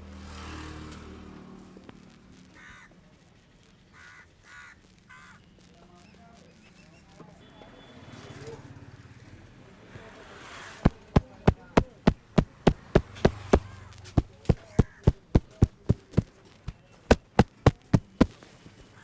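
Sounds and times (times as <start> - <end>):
hands slapping and tapping: 10.9 - 16.3, 17.1 - 18.4.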